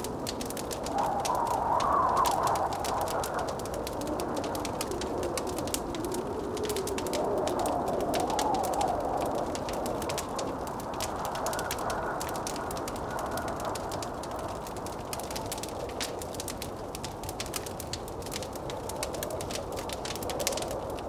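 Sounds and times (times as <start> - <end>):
wind howling: 0.0 - 21.0
wood fire crackling and popping: 0.0 - 21.0.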